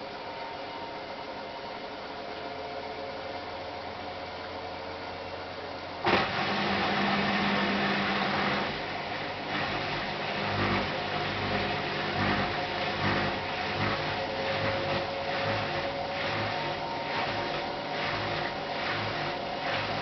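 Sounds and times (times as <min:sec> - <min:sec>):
washing machine drum rumbling: 0:08.8 - 0:20.0.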